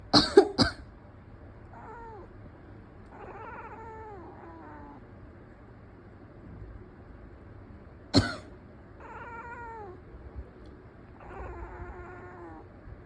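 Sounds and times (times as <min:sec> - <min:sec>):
person coughing: 0:00.1 - 0:00.8, 0:08.2 - 0:08.5
cat meowing: 0:01.7 - 0:02.3, 0:03.1 - 0:05.0, 0:09.0 - 0:10.0, 0:11.2 - 0:12.7.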